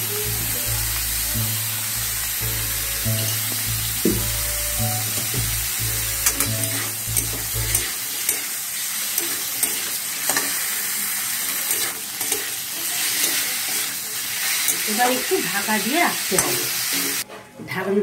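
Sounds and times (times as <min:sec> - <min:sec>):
low background music: 0:00.0 - 0:07.9
food sizzling in oil: 0:00.0 - 0:17.2
spatula clicking against pan: 0:06.2 - 0:08.5.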